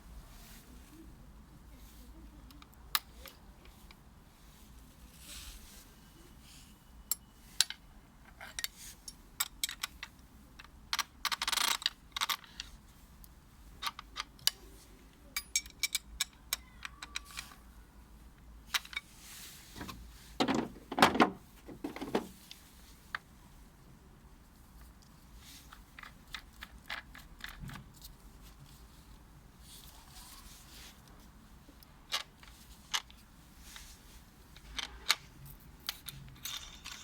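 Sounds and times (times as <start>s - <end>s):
heavier thumps: 19.8s - 22.4s
plastic packaging clicks and knocks: 19.8s - 22.4s.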